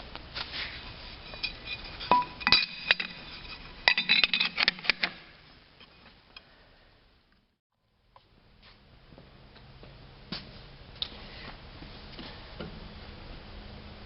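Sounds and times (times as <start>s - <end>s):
metal pieces clinking: 1.3s - 5.1s.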